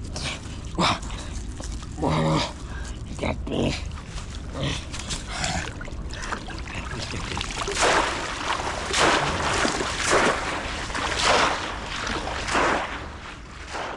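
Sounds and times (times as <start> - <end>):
water sloshing: 0.3 - 3.0, 3.8 - 13.9
heavy water splashes: 4.2 - 13.9.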